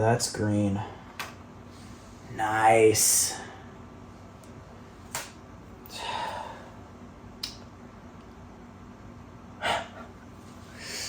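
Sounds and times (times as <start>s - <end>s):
person breathing out: 5.9s - 6.8s, 10.7s - 11.0s.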